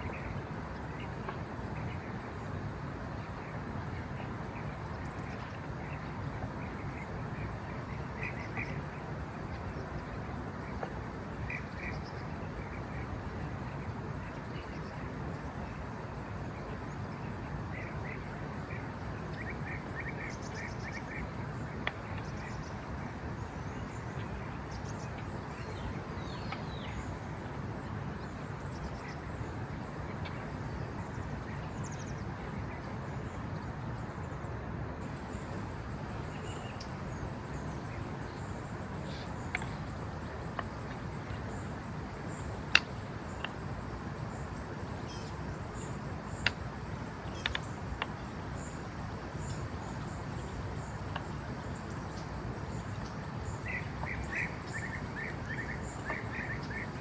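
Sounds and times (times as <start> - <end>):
steady background rush: 35.0 - 51.6
faint bird calls: 35.0 - 57.0.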